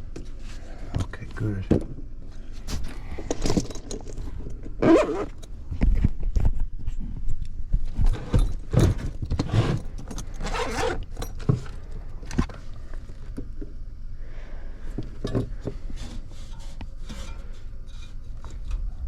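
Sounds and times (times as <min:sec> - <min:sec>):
scraping and rattling: 0:02.5 - 0:06.2, 0:07.9 - 0:12.6.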